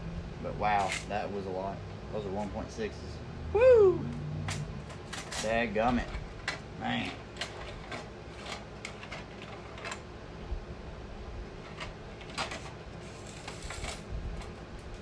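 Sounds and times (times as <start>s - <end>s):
low hum: 0.0s - 1.0s.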